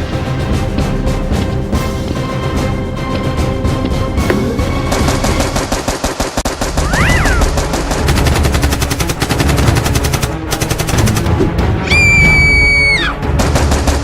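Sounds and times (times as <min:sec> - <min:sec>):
rapid machine-gun fire: 0:04.6 - 0:11.4, 0:13.2 - 0:14.0.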